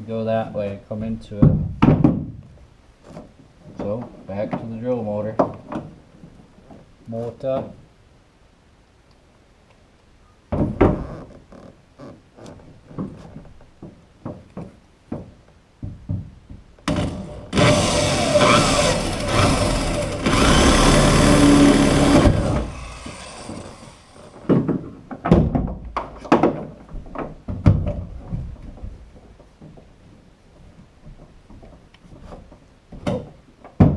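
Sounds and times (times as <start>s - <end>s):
electric drill boring through wood: 16.9s - 24.4s
tool handling knocks and clatter: 24.4s - 29.9s.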